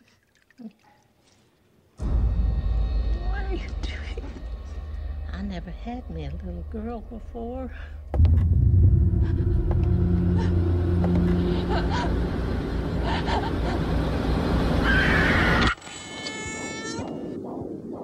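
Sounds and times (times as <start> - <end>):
loud low rumble: 2.0 - 15.7.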